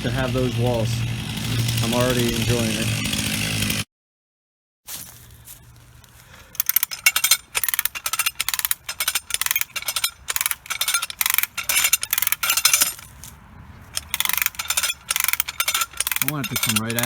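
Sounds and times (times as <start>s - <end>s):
ratchet pawl clicking: 6.6s - 13.0s, 14.0s - 17.0s.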